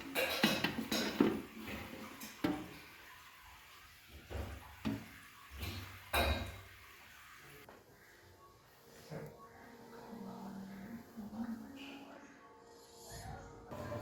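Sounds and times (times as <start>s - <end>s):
dishes and utensils clinking: 0.0s - 3.0s, 4.2s - 6.8s.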